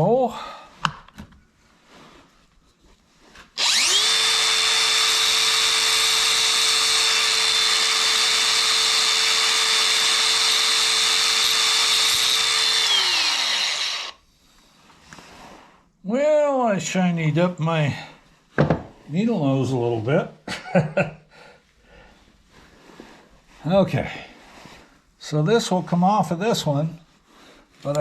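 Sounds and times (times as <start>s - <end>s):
rotary tool grinding metal: 3.6s - 14.2s.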